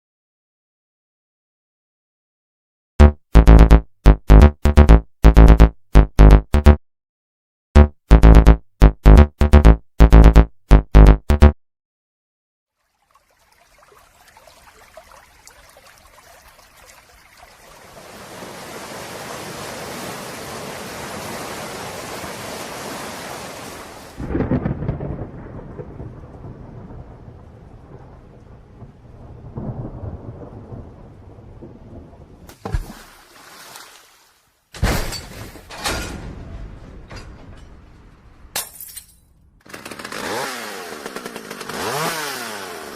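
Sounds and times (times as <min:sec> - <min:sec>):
heavy rain: 0:17.7 - 0:32.3
sharp thunder cracks: 0:24.2 - 0:28.3
thunder rumbling: 0:24.2 - 0:32.4.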